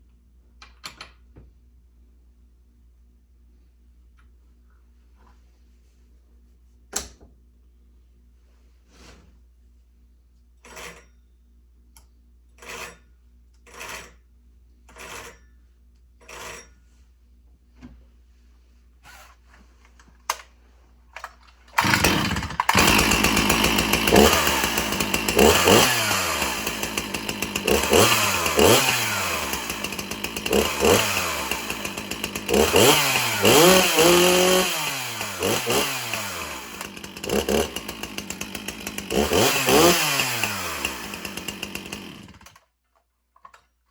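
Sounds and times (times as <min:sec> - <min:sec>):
chainsaw starter cord pulls: 0:21.2 - 0:42.7
chainsaw engine revving: 0:21.7 - 0:42.6.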